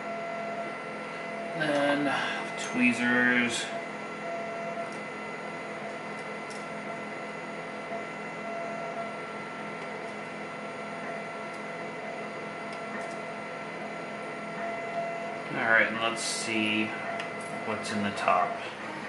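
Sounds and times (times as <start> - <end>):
machine hum: 0.0 - 19.0.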